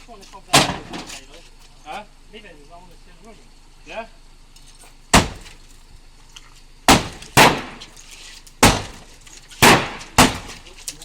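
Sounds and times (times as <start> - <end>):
sledgehammer blows on car: 5.1 - 5.6, 6.9 - 8.0, 8.6 - 10.7.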